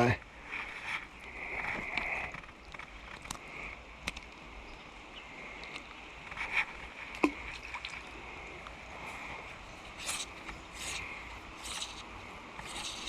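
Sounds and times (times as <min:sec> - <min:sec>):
creek water running: 0:00.0 - 0:13.0.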